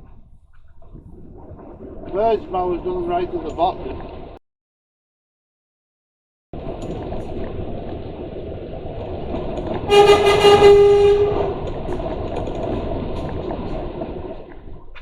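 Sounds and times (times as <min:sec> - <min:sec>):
lorry horn: 0:09.9 - 0:11.6.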